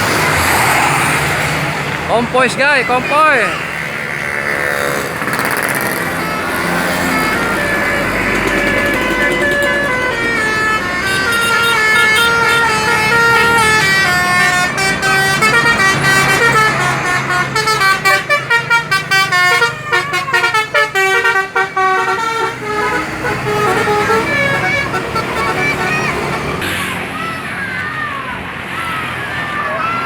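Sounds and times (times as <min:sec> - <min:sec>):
multi-tone bus horn melody: 0:06.0 - 0:27.2.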